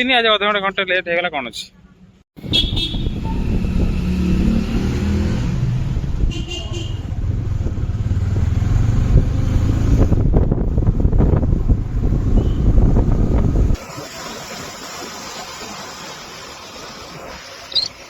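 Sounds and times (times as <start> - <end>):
road and wind noise: 0.8 - 18.0
motorcycle engine rumble: 5.6 - 13.7.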